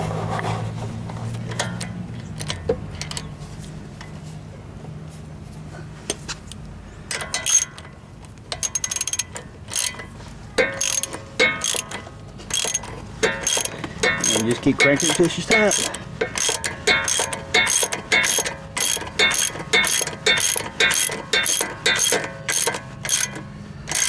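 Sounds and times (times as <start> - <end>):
hand ratchet clicking: 7.1 - 24.0.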